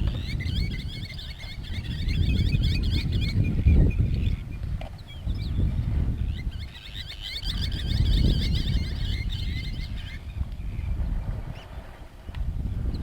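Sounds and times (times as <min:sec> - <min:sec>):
songbird warbling: 0:06.2 - 0:10.3.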